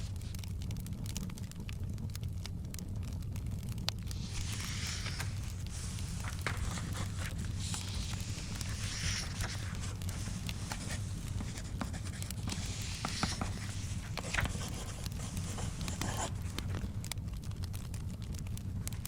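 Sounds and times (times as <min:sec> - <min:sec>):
crackling fire: 0:00.0 - 0:19.0
paper scratching and rustling: 0:04.1 - 0:16.9.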